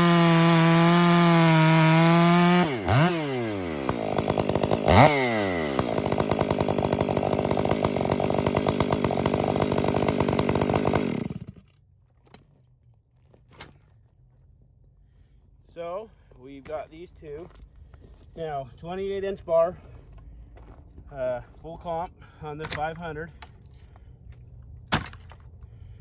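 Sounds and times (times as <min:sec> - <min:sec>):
chainsaw revving and idling: 0:00.0 - 0:11.7.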